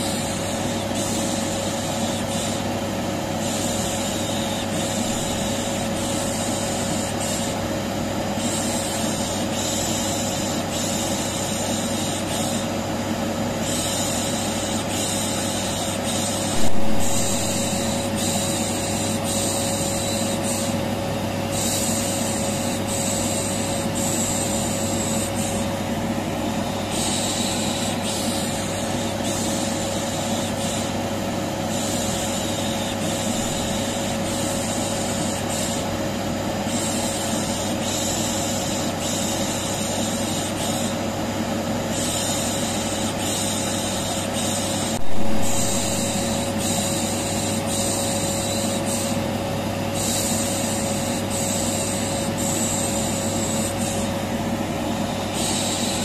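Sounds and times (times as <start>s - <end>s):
vacuum cleaner humming: 15.9s - 21.0s, 45.0s - 47.0s
loud bump: 16.6s - 18.2s.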